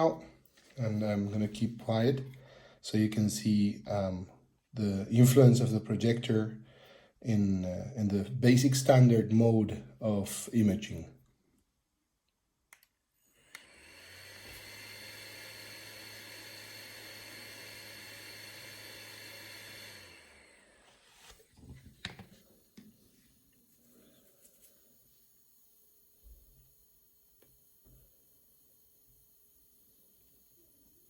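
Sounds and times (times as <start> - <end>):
projector fan hiss and whine: 13.2 - 22.9.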